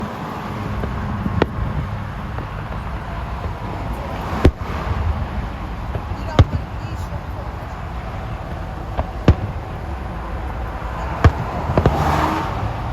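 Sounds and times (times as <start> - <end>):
fireworks bangs: 0.0 - 12.9
low rumble: 0.0 - 12.9.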